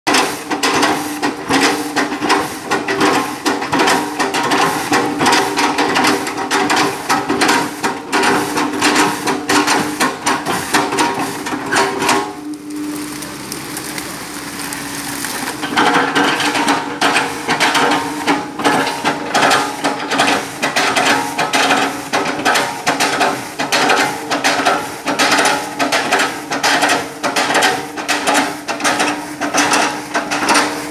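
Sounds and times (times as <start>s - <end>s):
excavator engine tone: 0.1s - 22.5s.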